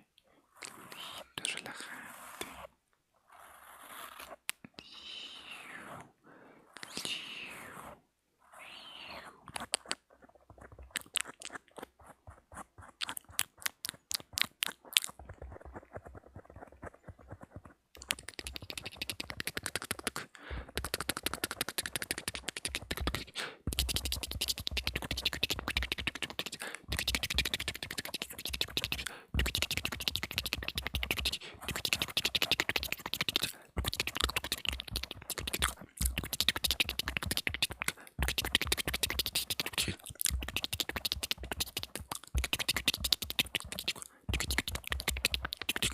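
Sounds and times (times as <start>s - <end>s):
wet mouth clicks: 6.8s - 7.3s, 8.7s - 11.9s, 12.8s - 45.9s
fast clicking and crackling: 13.0s - 45.9s.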